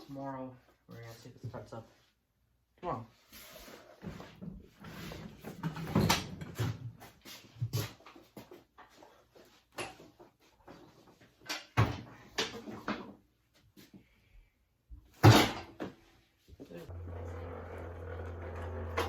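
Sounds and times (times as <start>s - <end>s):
objects knocking and clunking: 4.0s - 13.2s, 16.9s - 19.0s.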